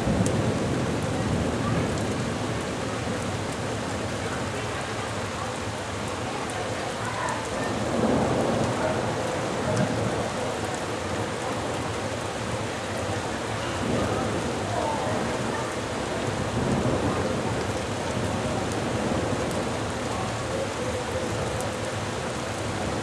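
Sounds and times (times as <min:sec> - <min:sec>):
heavy rain hissing: 0:00.0 - 0:23.0
thunder rumble: 0:07.7 - 0:11.4.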